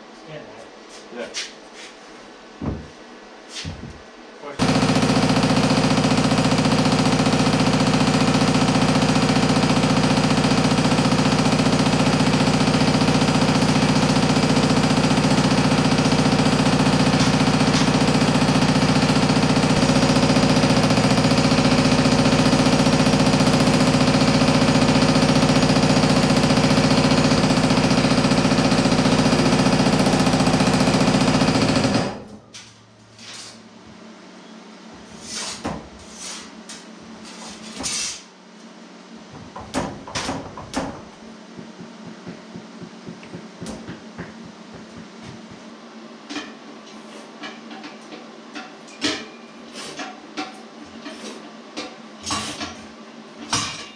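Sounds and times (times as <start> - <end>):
power hammer pounding sheet metal: 4.6 - 32.2.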